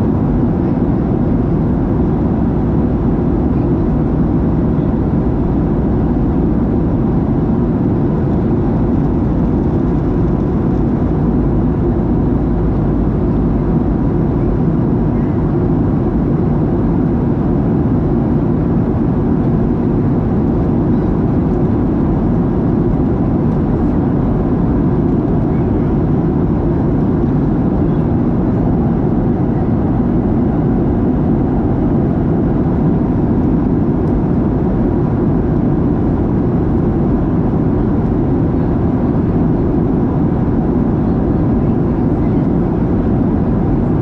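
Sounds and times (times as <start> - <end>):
faint steady whine: 0.0 - 44.0
jet engine cabin drone: 0.0 - 44.0.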